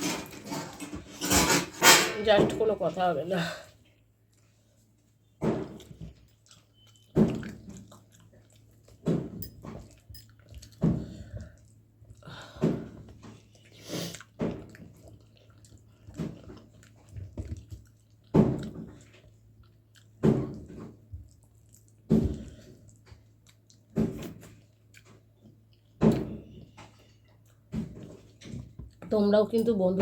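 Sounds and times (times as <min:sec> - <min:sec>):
person chewing: 0:03.8 - 0:29.0.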